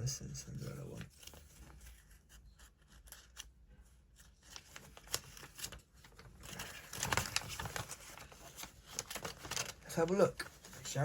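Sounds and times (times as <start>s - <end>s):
packaging rustling and clicking: 4.5s - 11.0s.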